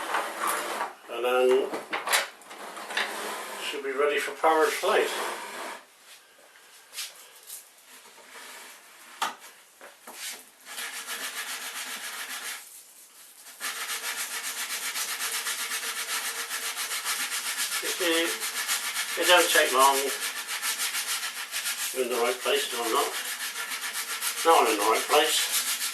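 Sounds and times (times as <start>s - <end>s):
sandpaper rubbing on metal edge: 10.7s - 25.9s.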